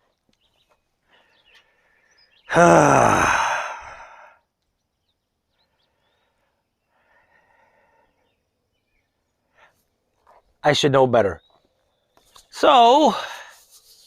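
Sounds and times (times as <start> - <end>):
man sighing: 2.5 - 4.4.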